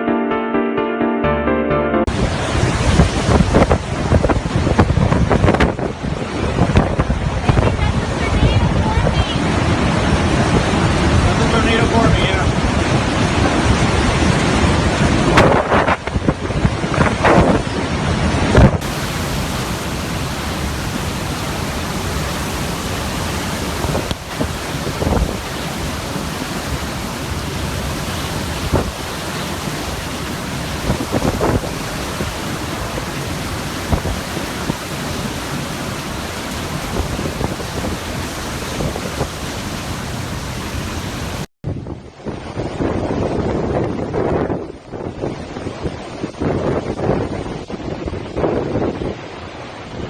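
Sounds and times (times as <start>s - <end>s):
driving rain: 2.1s - 17.2s, 18.6s - 41.5s
strong wind buffeting microphone: 2.1s - 50.0s.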